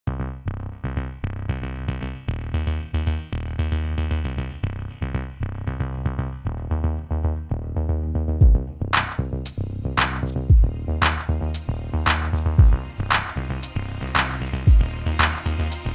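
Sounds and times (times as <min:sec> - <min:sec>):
electronic music: 0:08.4 - 0:15.9.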